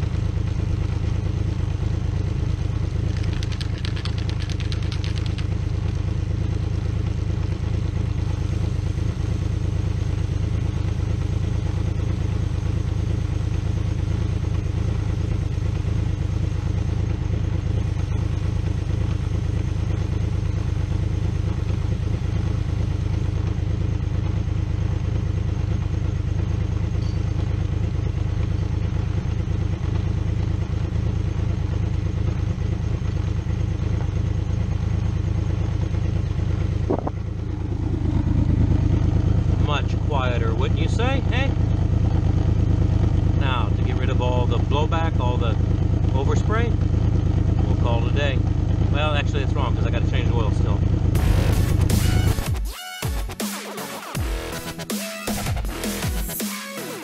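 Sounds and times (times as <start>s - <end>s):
motorcycle engine running: 0.0s - 53.4s
drive chain clatter: 3.0s - 6.0s.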